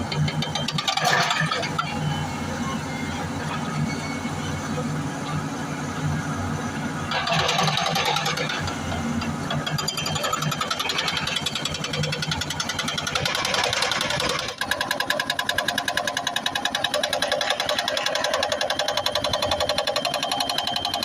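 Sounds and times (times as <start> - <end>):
hydraulic breaker hammering stone: 0.0 - 2.0, 7.1 - 21.0
diesel engine running with knocks: 0.0 - 21.0.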